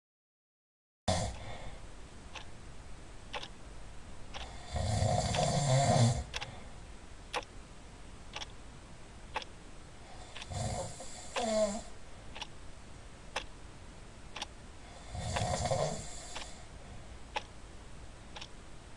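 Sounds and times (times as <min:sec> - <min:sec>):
clock ticking: 0:02.3 - 0:02.5, 0:03.3 - 0:03.6, 0:04.3 - 0:04.5, 0:05.3 - 0:05.6, 0:07.3 - 0:07.5, 0:08.3 - 0:08.6, 0:09.3 - 0:09.5, 0:12.3 - 0:12.6, 0:13.3 - 0:13.5, 0:14.3 - 0:14.6, 0:15.3 - 0:15.7, 0:16.3 - 0:16.6, 0:17.3 - 0:17.6, 0:18.3 - 0:18.6
loud snoring: 0:04.5 - 0:06.4, 0:10.2 - 0:11.9, 0:14.9 - 0:16.6.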